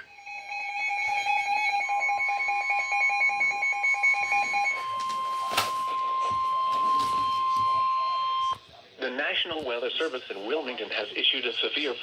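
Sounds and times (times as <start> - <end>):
steady alarm tone: 0.0 - 8.6.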